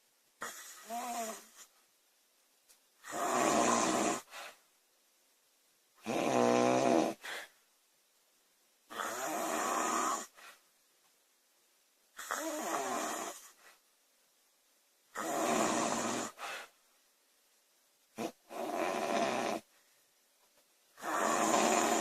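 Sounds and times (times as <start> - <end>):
woman snoring loudly: 0.4 - 1.6, 3.0 - 4.3, 6.0 - 7.3, 8.9 - 10.4, 12.2 - 13.5, 15.1 - 16.4, 18.2 - 19.7, 21.0 - 22.0.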